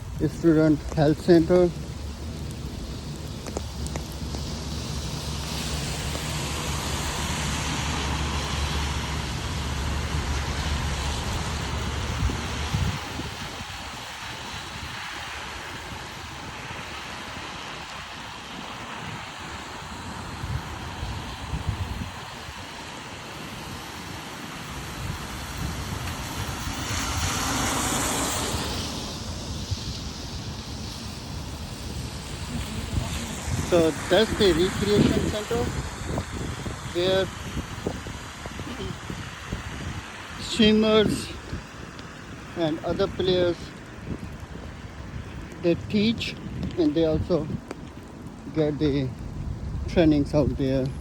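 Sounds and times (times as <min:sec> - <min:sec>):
low traffic rumble: 0:00.0 - 0:51.0
tyre hiss on wet road: 0:00.0 - 0:51.0.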